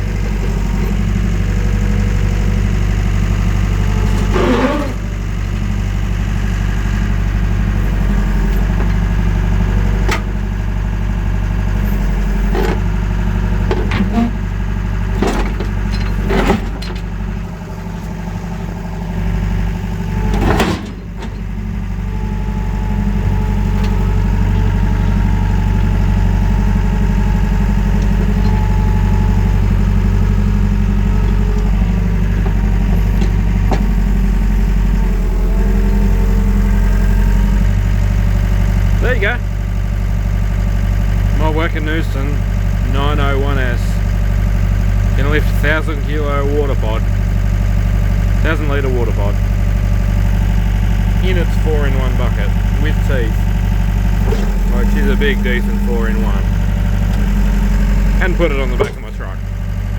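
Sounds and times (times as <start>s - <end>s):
skid steer engine running: 0.0s - 59.9s
sharp clunks and knocks: 13.6s - 14.4s, 15.1s - 17.2s, 20.3s - 21.6s, 31.2s - 34.1s, 54.1s - 54.7s, 56.8s - 59.2s.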